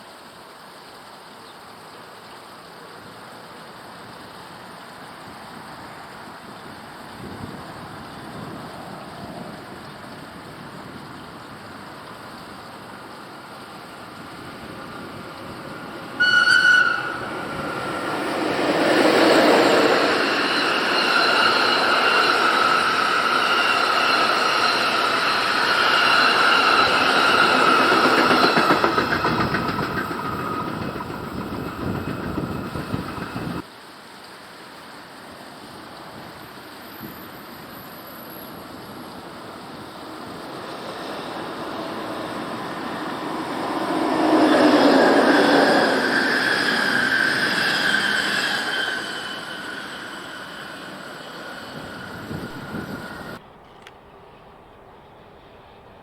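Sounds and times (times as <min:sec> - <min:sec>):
train rumbling and clattering: 0:05.0 - 0:33.7, 0:36.1 - 0:56.0
steady high squeal: 0:11.5 - 0:33.6, 0:36.2 - 0:53.4.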